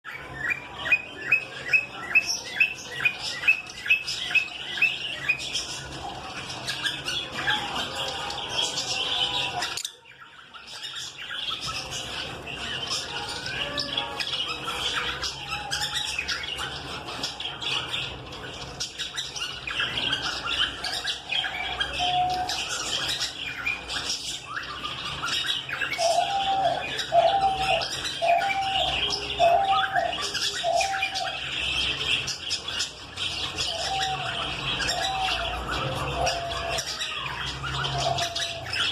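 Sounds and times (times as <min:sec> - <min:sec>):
lovebirds chattering and squawking: 0:00.0 - 0:38.9.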